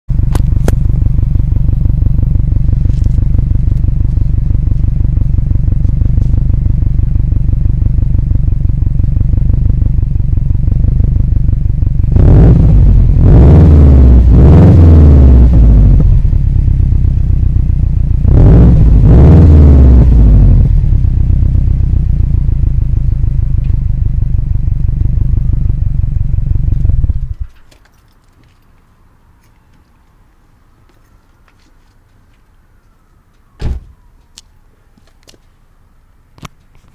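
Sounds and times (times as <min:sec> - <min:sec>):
car engine idling and revving: 0:00.1 - 0:27.6.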